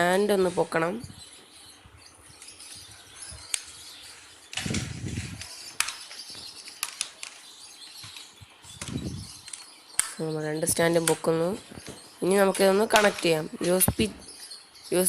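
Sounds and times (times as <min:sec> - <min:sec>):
plastic stand legs clicking: 0:04.5 - 0:10.3, 0:12.6 - 0:14.0.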